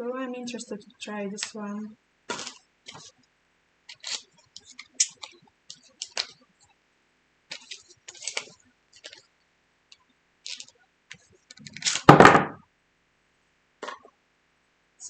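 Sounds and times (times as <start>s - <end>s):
packaging clicking and crinkling: 2.3s - 3.1s, 3.9s - 6.4s, 7.5s - 9.3s, 9.9s - 12.1s.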